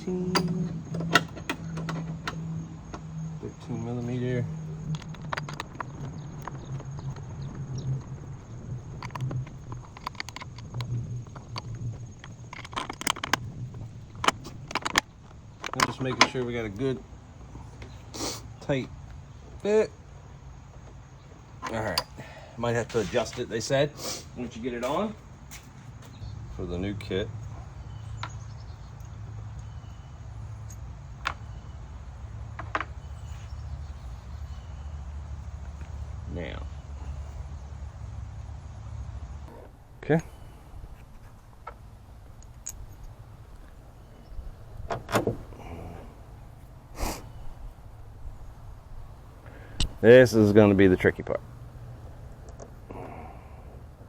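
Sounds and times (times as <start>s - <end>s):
low background rumble: 0.0s - 23.8s
metal tools clicking: 0.2s - 3.0s, 8.4s - 16.8s.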